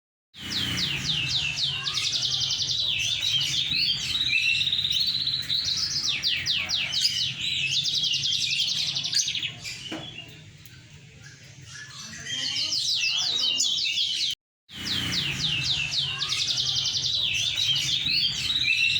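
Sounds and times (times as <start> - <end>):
canary singing: 0.4 - 18.9.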